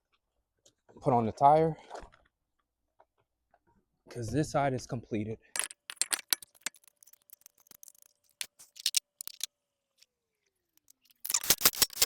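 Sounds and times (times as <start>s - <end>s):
metal clicks and clatter: 5.6s - 9.5s.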